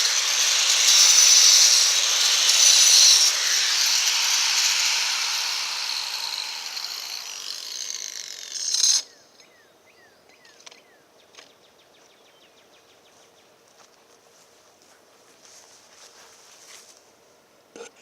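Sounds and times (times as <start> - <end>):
power grinder whining on stone: 0.0 - 9.0.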